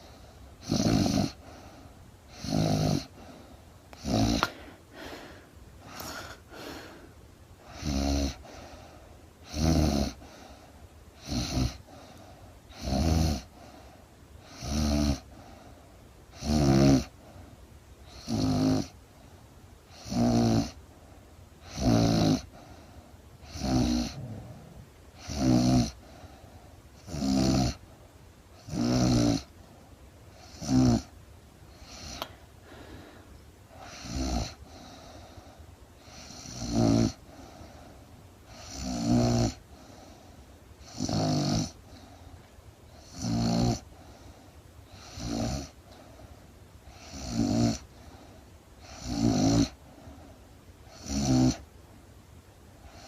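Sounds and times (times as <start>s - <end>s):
quiet breathing: 0.0s - 0.6s, 1.3s - 2.4s, 3.0s - 12.8s, 13.4s - 16.4s, 17.1s - 18.3s, 22.4s - 27.1s, 29.4s - 38.9s, 39.5s - 41.0s, 41.6s - 51.1s, 52.8s - 53.0s
woman snoring: 0.6s - 1.4s, 2.3s - 3.2s, 4.0s - 7.0s, 7.7s - 8.5s, 9.4s - 10.2s, 12.7s - 13.5s, 14.5s - 15.3s, 16.4s - 17.1s, 18.1s - 18.9s, 20.0s - 20.8s, 21.7s - 22.5s, 23.4s - 26.0s, 27.0s - 27.8s, 28.6s - 29.5s, 30.4s - 31.1s, 33.8s - 34.8s, 36.0s - 37.2s, 38.5s - 39.6s, 40.8s - 41.8s, 43.0s - 43.8s, 44.9s - 45.8s, 46.9s - 47.8s, 48.9s - 49.8s, 50.9s - 51.6s.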